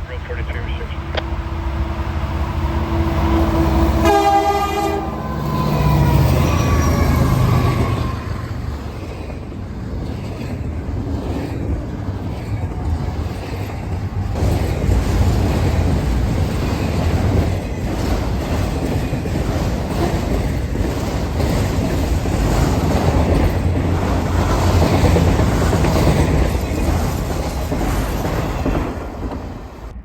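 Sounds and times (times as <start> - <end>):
train wheels rumbling on rails: 1.1 - 30.0.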